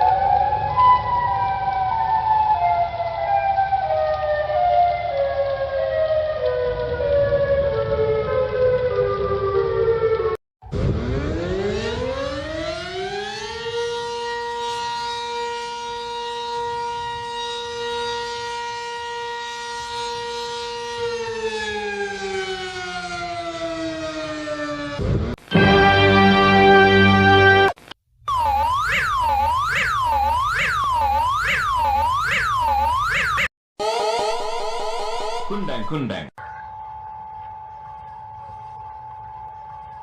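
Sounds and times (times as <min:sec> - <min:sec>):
civil defense siren winding: 0:00.0 - 0:35.8, 0:36.4 - 0:40.0
alarm with stepped falling tones: 0:28.3 - 0:36.3.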